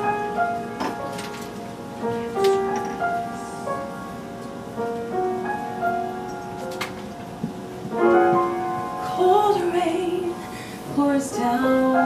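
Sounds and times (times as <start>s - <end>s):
solo piano ballad: 0.0s - 12.0s.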